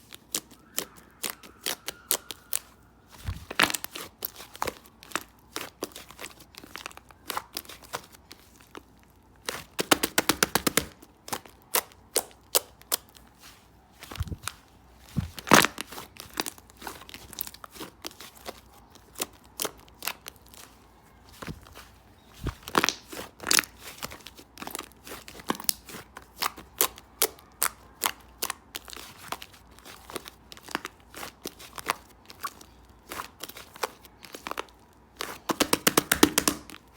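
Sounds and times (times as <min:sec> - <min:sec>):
slime clicking and popping: 0:09.8 - 0:13.1, 0:35.2 - 0:36.8.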